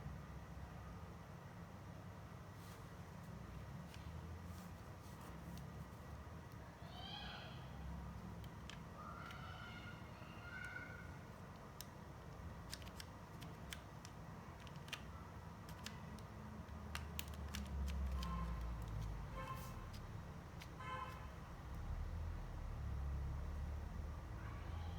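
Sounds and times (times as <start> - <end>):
plastic pieces clicking: 11.5 - 19.2.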